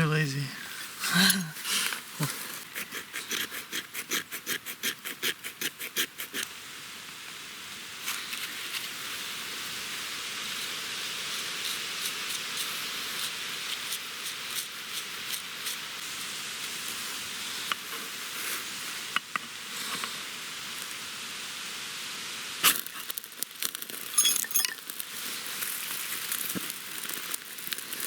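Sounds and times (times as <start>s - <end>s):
hiss with small crackles: 0.1s - 28.0s
knife scraping fire-starter rod: 0.8s - 6.5s, 10.5s - 16.1s, 22.6s - 28.0s.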